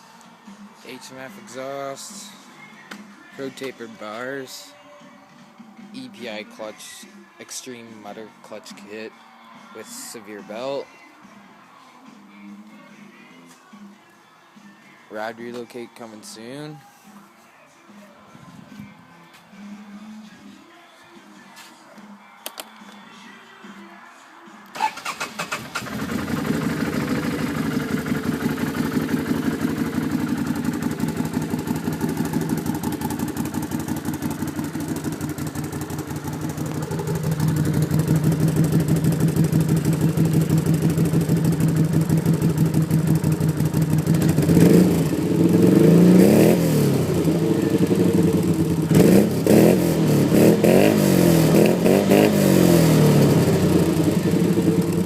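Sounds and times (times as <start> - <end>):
atv engine idling and revving: 25.4 - 55.0.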